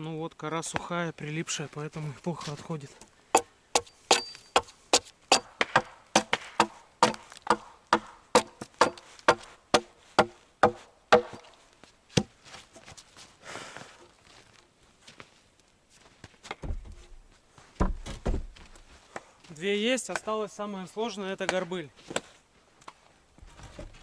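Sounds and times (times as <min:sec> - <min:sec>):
hand tool chopping bark off wood: 0:03.3 - 0:12.3.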